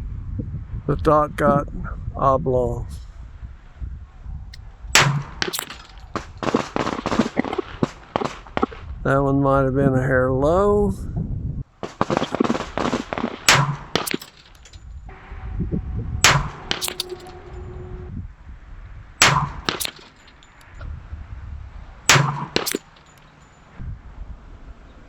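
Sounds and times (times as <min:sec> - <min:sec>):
wind rumble on microphone: 0:00.0 - 0:05.4, 0:08.5 - 0:11.8, 0:14.7 - 0:19.7, 0:20.6 - 0:22.1, 0:23.7 - 0:25.0
pistol shots: 0:05.0 - 0:08.4, 0:11.9 - 0:14.7, 0:16.2 - 0:17.4, 0:19.2 - 0:20.5, 0:22.1 - 0:23.4
quieter distant gunfire: 0:05.0 - 0:08.7, 0:11.8 - 0:14.7, 0:16.2 - 0:17.5, 0:19.2 - 0:20.5, 0:22.1 - 0:23.4
fainter echo crack: 0:16.2 - 0:17.6, 0:19.2 - 0:20.6, 0:22.1 - 0:23.5.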